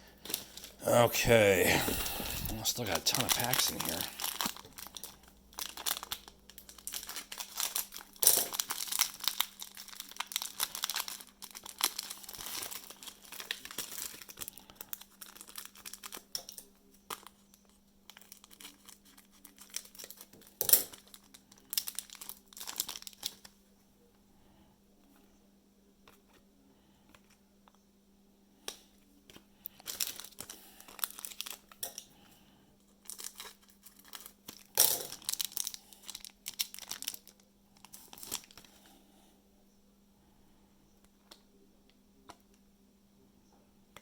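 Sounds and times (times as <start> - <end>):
plastic wrappers crinkling and tearing: 0.2 - 23.6, 29.6 - 32.1, 32.9 - 38.8.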